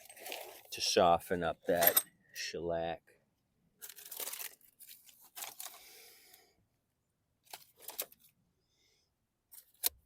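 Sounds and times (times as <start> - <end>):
rustling and crinkling: 0.0 - 1.0, 3.8 - 6.0, 7.4 - 8.4.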